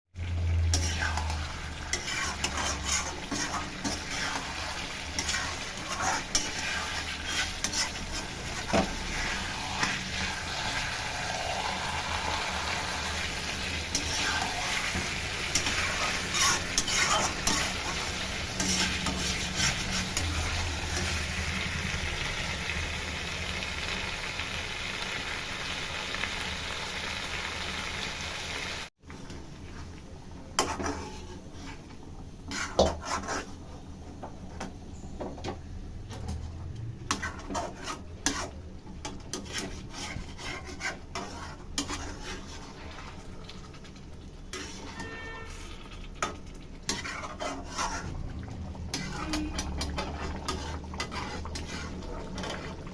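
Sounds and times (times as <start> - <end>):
food sizzling in a pan: 0.2 - 33.6, 37.0 - 52.9
spoon scraping a pan: 0.6 - 21.6, 30.5 - 33.8, 37.0 - 52.9.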